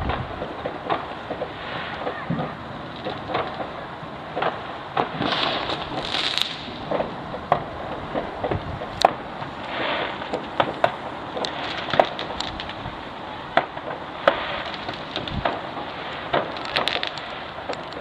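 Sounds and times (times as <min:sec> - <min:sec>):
fireworks bangs and crackles: 0:00.0 - 0:18.0
steady background hiss: 0:00.0 - 0:18.0.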